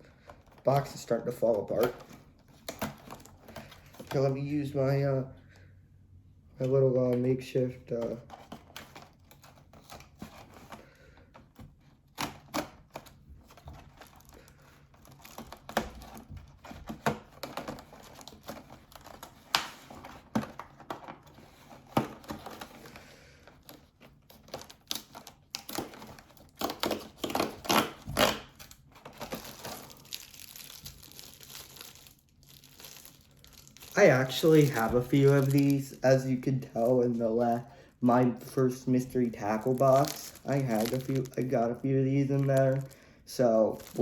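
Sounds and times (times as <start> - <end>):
packaging crinkling and rustling: 0.2 - 4.5, 7.9 - 44.0
cardboard tearing: 12.0 - 36.0, 39.0 - 43.0, 43.6 - 44.0.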